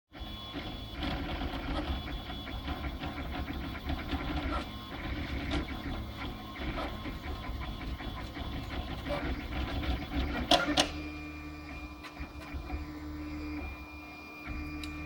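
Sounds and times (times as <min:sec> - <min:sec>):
printer mechanical hum: 0:00.1 - 0:15.0
small irregular clicks: 0:14.7 - 0:15.0.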